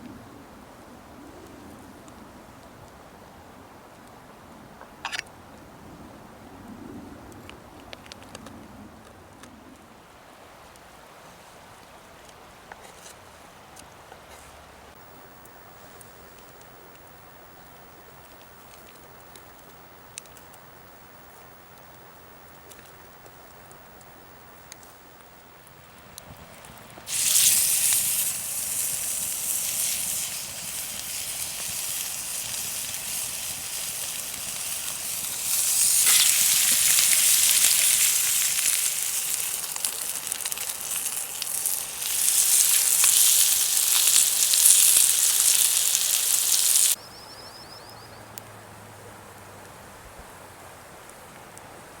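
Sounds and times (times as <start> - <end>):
meat sizzling on a grill: 27.1 - 47.0.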